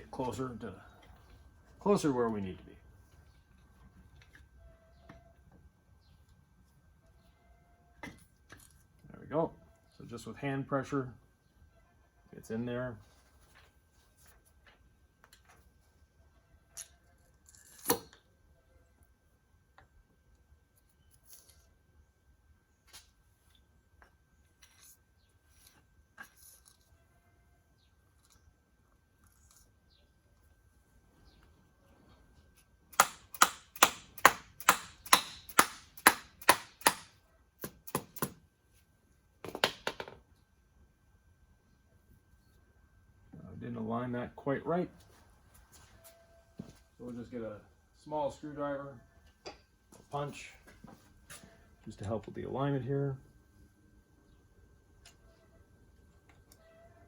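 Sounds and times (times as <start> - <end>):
hammer tapping metal: 33.0 - 37.1
sharp metallic clack: 33.0 - 37.1.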